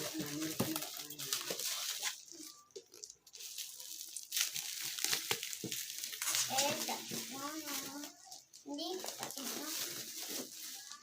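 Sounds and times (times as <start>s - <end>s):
crinkling rustling handling noise: 0.0s - 11.0s.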